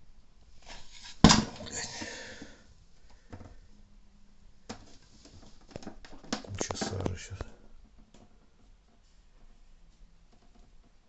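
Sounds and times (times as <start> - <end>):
rustling: 0.4 - 3.8.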